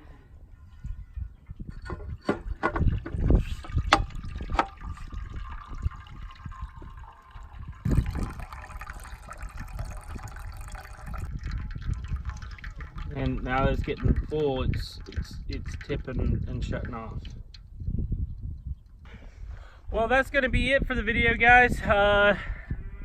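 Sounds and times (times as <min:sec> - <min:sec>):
water hissing into bowl: 0:03.3 - 0:11.6.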